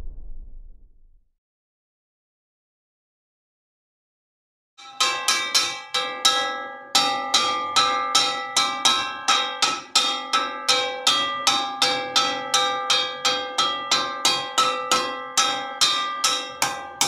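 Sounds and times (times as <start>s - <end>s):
metal wok being struck: 4.8s - 17.0s.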